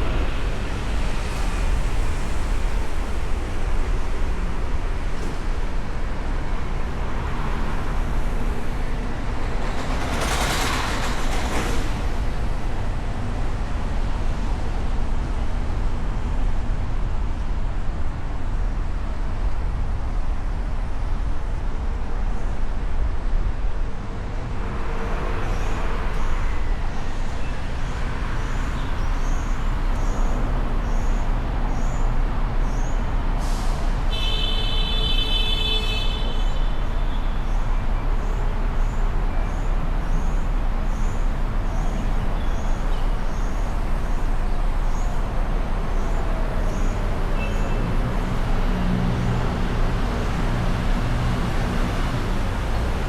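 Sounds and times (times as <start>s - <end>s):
city traffic: 0.0s - 53.0s
car horn: 34.1s - 36.8s.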